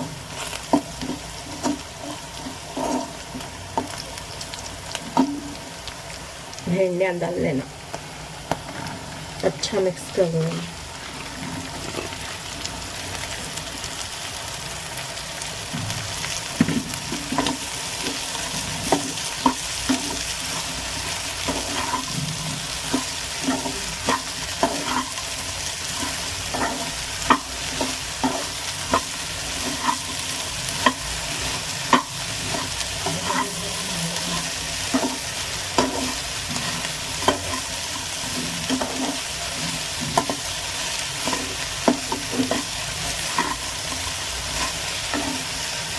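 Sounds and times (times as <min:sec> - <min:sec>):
okra sizzling in a pan: 0:00.0 - 0:45.9
spoon scraping and clinking pan: 0:41.2 - 0:45.4.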